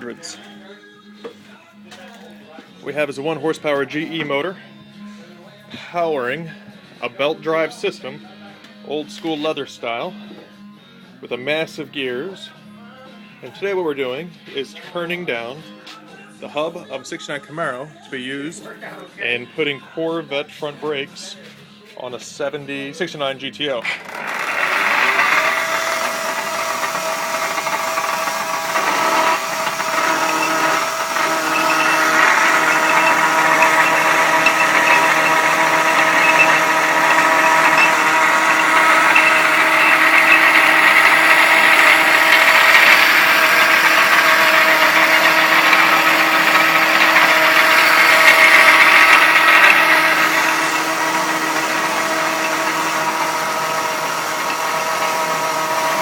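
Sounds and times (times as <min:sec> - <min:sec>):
lathe whining: 0:23.8 - 0:56.0.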